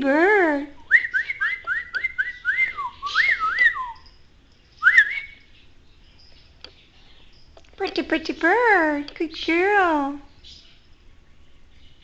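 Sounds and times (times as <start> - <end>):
short rising whistles: 4.8 - 5.5.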